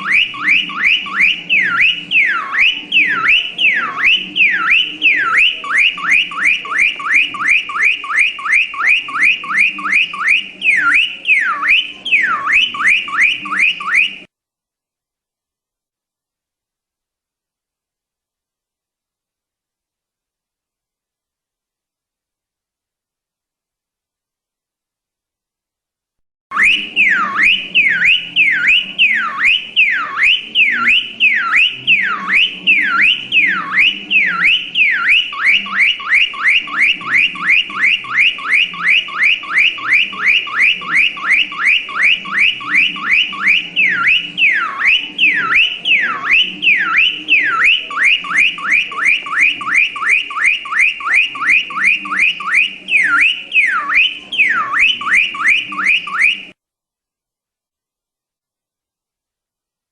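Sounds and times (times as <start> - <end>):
car alarm siren: 0.0 - 14.3, 26.5 - 56.6.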